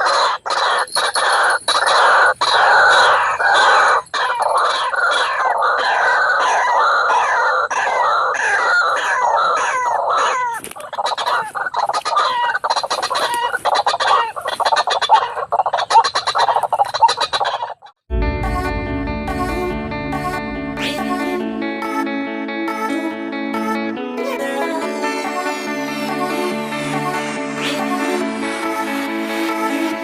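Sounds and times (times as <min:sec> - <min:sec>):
birds calling harshly: 0:00.0 - 0:18.0.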